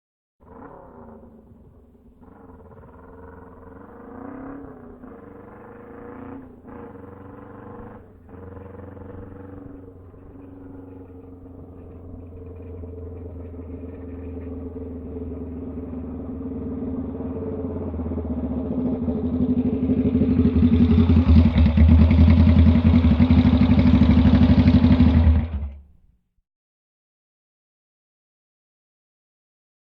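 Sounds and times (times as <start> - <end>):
motorcycle engine running: 0.5 - 25.9.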